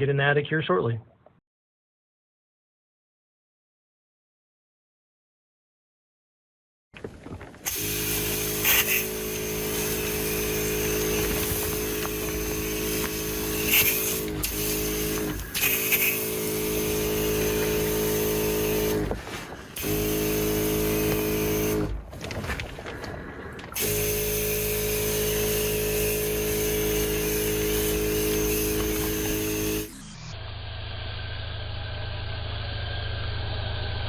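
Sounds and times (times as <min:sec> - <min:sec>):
small electric motor running: 0:07.7 - 0:22.0, 0:23.8 - 0:34.0.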